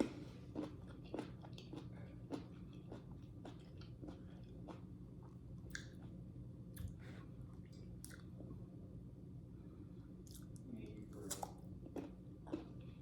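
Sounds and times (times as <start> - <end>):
person chewing fruit: 0.0 - 6.2, 11.2 - 13.0.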